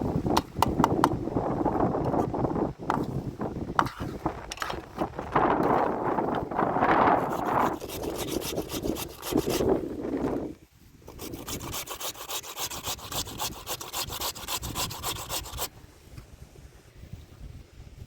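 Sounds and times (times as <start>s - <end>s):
potatoes grated on metal grater: 7.2s - 9.6s, 11.1s - 15.7s.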